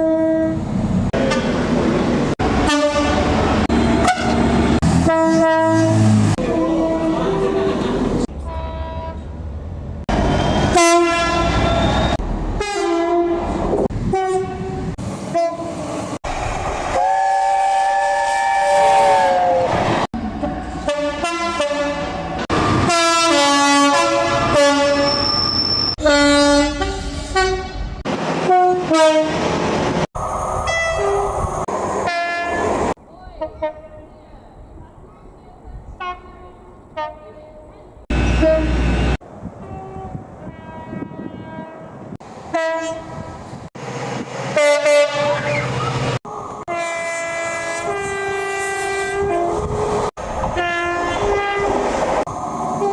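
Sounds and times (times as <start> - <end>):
two-note train horn blasts: 38.1 - 41.9.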